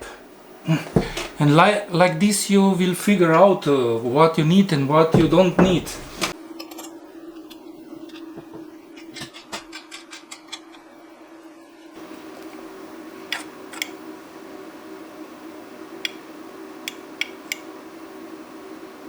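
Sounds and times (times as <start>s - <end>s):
steady low hum: 0.0s - 9.6s.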